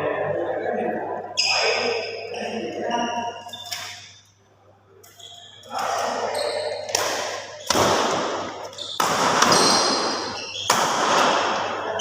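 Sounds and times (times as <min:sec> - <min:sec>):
high squeaks: 0:01.4 - 0:04.2, 0:05.0 - 0:11.1
sharp hits echoing: 0:06.7 - 0:12.0.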